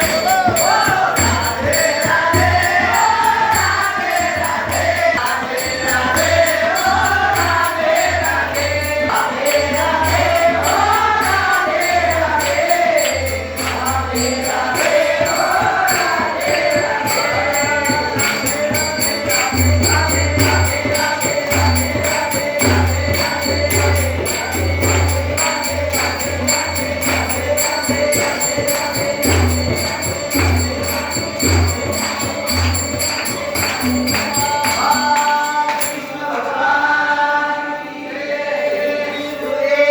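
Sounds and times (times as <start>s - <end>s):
steady drum beat: 0.0s - 35.4s
jingling percussion: 0.0s - 37.0s
voices singing: 0.0s - 39.9s.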